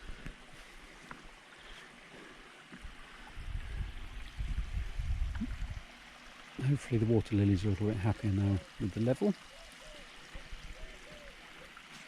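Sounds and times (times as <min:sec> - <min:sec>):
small waterfall splashing: 0:00.0 - 0:12.0.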